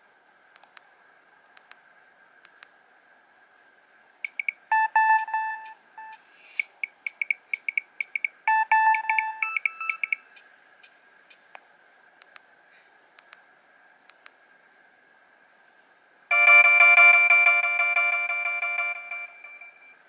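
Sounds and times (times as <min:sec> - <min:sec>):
faint steady whine: 0:00.0 - 0:20.0
mobile phone ringtone melody: 0:04.7 - 0:06.2, 0:08.5 - 0:10.2, 0:16.3 - 0:19.9.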